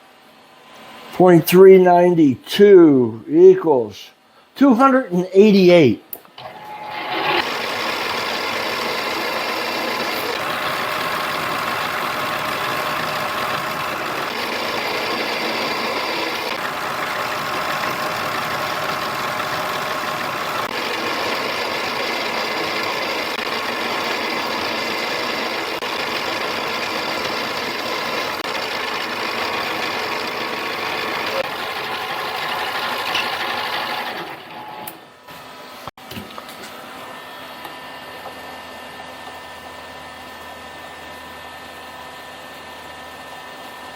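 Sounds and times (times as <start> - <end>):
lathe motor whining: 6.4 - 35.1.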